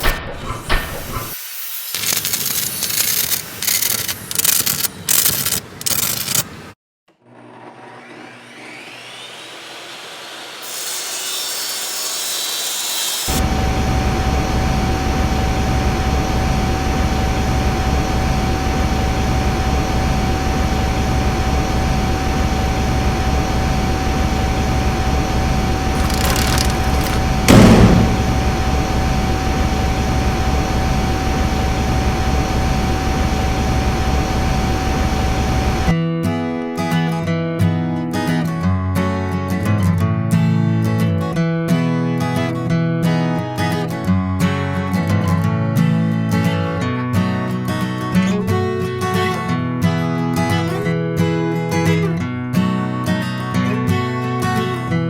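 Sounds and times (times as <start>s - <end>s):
power tool whining: 7.3s - 11.9s, 23.4s - 28.9s.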